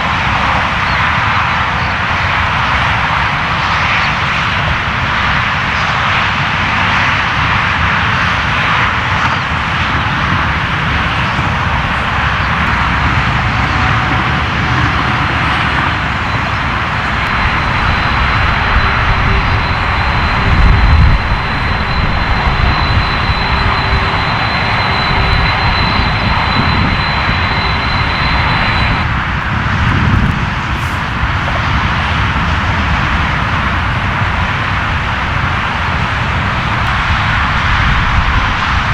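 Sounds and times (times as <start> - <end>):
jet engines running: 0.0 - 38.9
low engine surge: 11.0 - 34.1
thin high whine: 11.5 - 29.2.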